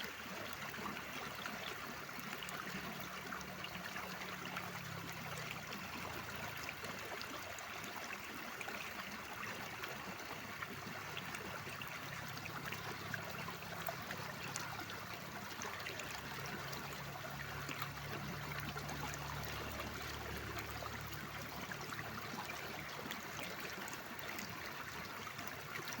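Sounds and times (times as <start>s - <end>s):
mountain stream flowing: 0.0s - 26.0s.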